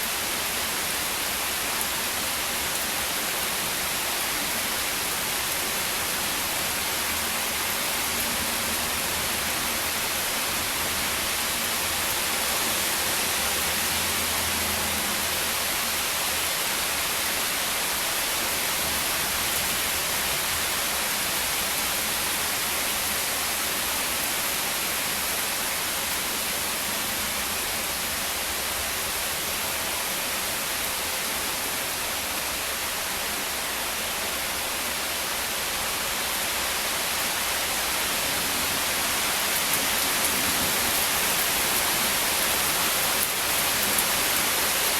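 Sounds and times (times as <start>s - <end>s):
heavy rain falling: 0.0s - 44.9s.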